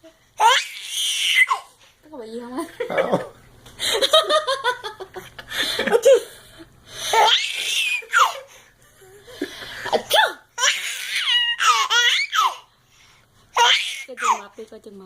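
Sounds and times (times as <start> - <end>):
baby laughing: 7.1 - 9.3, 9.9 - 12.7
person sneezing: 9.9 - 10.4.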